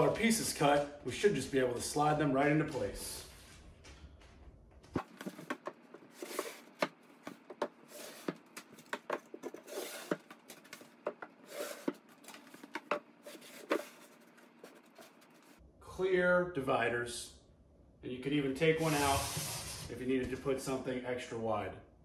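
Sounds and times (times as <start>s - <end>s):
panels knocking and clicking: 4.8s - 15.6s
panels scraping in grooves: 5.0s - 15.6s, 18.8s - 19.9s.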